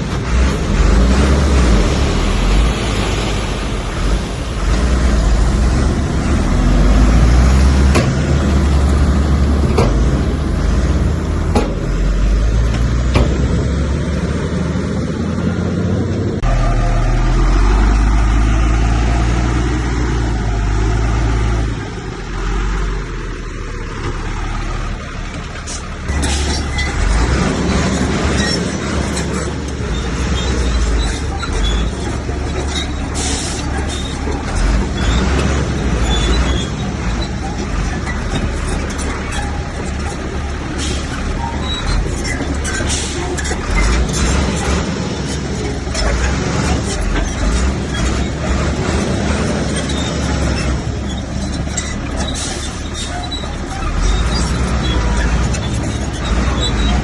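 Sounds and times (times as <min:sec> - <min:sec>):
heavy diesel machinery running: 0:00.0 - 0:57.0
metal knocks and clanks: 0:07.7 - 0:08.7, 0:09.5 - 0:10.8, 0:11.4 - 0:13.8.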